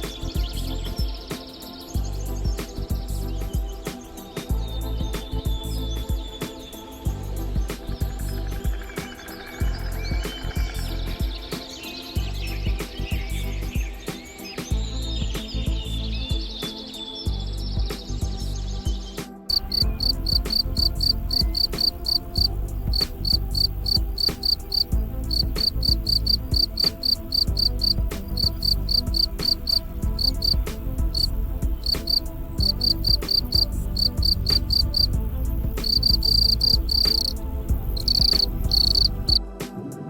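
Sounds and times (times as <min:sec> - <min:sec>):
insect chirping: 0:19.5 - 0:39.4
low rumble: 0:24.8 - 0:39.4.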